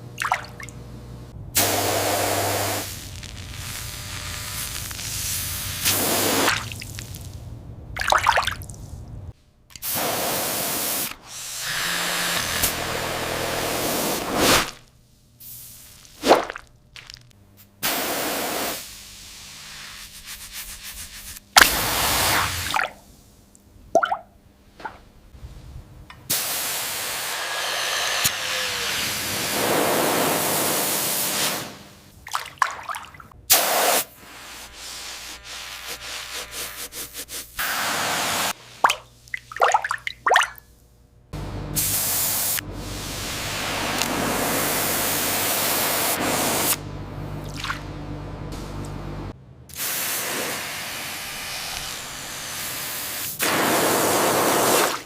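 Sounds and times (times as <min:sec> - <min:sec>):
hissing spray: 0:01.6 - 0:07.3, 0:09.8 - 0:14.8, 0:17.8 - 0:22.7, 0:26.3 - 0:32.0, 0:33.5 - 0:38.8, 0:41.8 - 0:46.8, 0:49.7 - 0:55.0.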